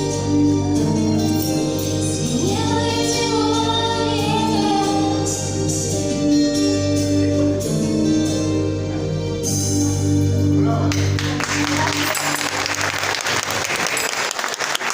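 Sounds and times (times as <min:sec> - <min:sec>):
instrumental accompaniment: 0:00.0 - 0:14.3
woman singing with vibrato: 0:02.0 - 0:06.6.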